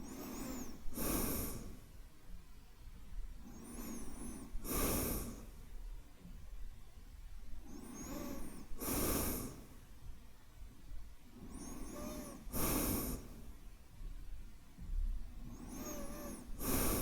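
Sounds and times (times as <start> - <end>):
man breathing deeply: 0.1 - 1.8, 3.5 - 5.6, 7.8 - 9.8, 11.4 - 13.6, 15.6 - 17.0.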